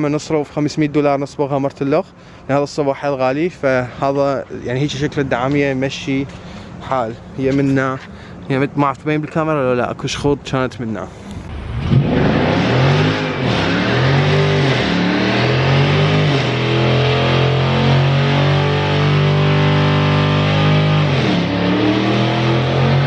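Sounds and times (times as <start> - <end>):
car engine revving high: 11.5 - 23.0.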